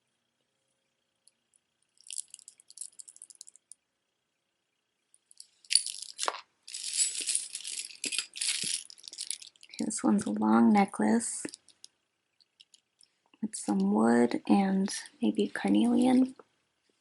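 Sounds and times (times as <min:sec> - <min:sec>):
necklace beads rattling: 0:02.0 - 0:03.8, 0:05.3 - 0:10.0, 0:11.4 - 0:13.1.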